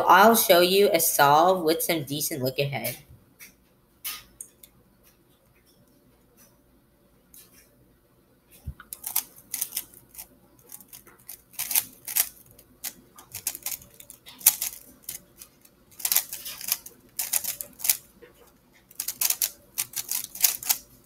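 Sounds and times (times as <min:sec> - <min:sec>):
puzzle cube clicking: 0:08.8 - 0:18.1, 0:18.9 - 0:20.9.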